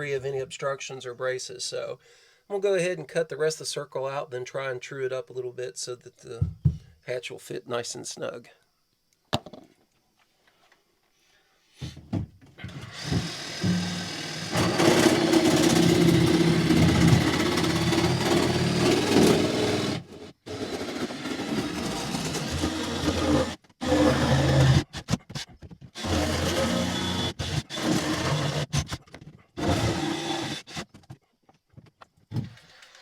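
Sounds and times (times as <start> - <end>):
power saw cutting fiberglass: 12.6 - 25.4, 26.0 - 29.0, 29.6 - 30.9.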